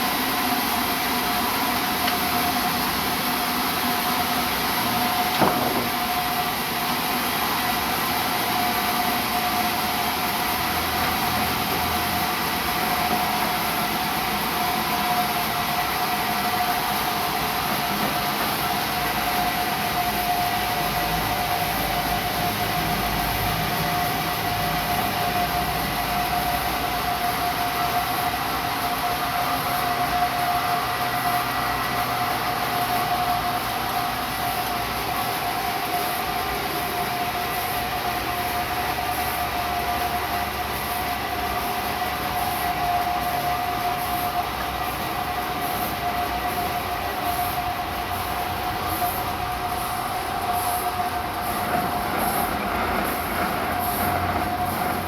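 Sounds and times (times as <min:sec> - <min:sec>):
single knock: 0:05.3 - 0:06.0
sawmill saw whining: 0:43.4 - 0:55.0.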